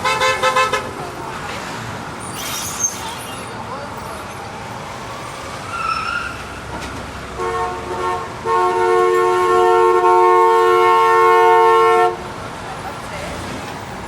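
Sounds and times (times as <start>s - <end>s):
vehicle horn honking: 0.0s - 1.0s, 7.4s - 12.2s
street traffic noise: 0.0s - 14.0s.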